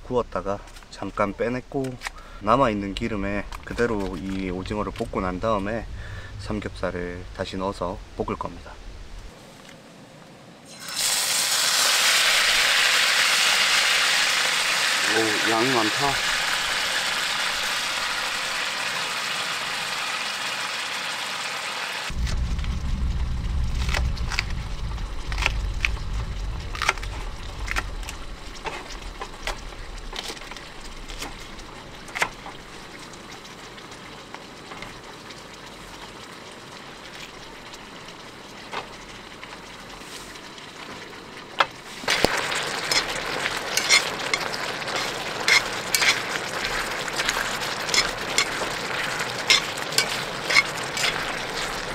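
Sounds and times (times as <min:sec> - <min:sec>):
low rumble: 0:00.0 - 0:09.4, 0:22.1 - 0:32.9
food sizzling in frying pan: 0:10.7 - 0:51.9.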